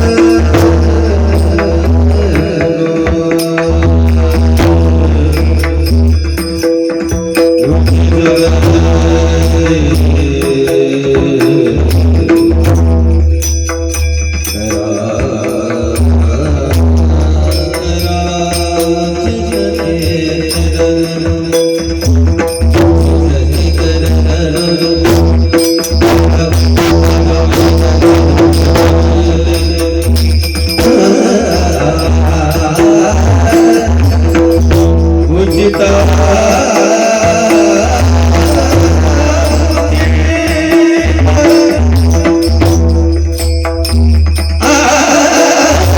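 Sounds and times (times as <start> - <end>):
drumming with deep bass: 0.0 - 45.0
chant-like singing: 44.6 - 45.9.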